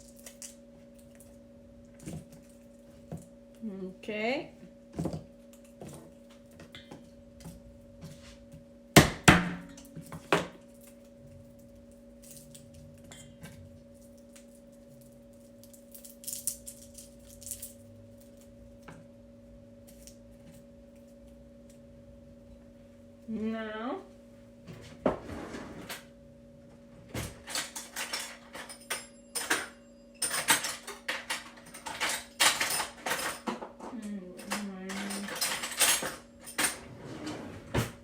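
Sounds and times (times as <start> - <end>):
low electrical hum: 0.0 - 38.0
utensils and dishes clattering: 27.2 - 38.0.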